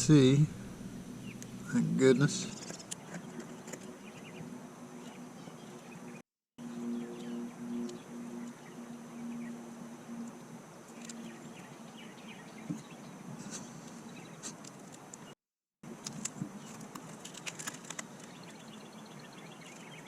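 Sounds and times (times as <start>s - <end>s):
low steady hum: 0.0s - 2.7s
small birds chirping: 0.0s - 9.6s, 10.9s - 15.4s, 17.9s - 20.0s.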